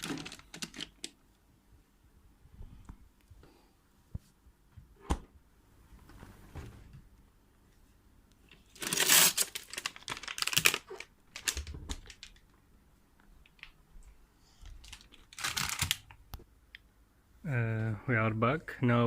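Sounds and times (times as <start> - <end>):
crinkling rustling handling noise: 0.0 - 1.2, 8.4 - 16.3.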